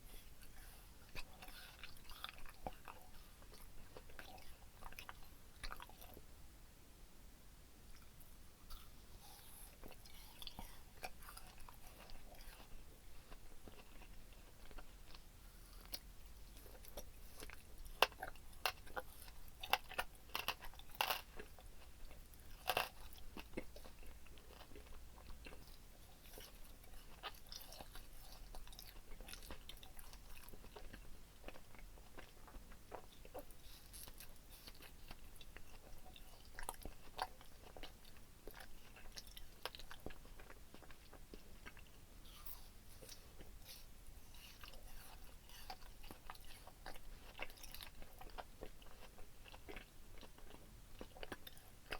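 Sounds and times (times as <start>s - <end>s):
chewing gummy candy: 0.0s - 6.3s, 7.9s - 51.9s.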